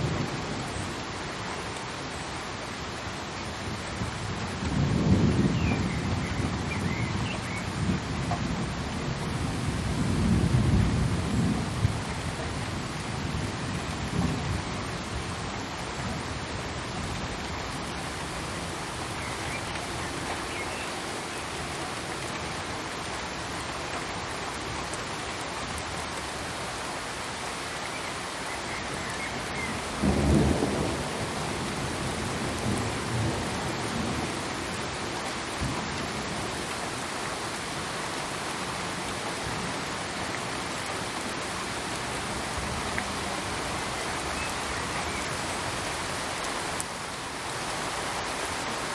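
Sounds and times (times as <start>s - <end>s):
steady rain falling: 0.0s - 48.9s
thunder rumbling: 29.7s - 34.2s.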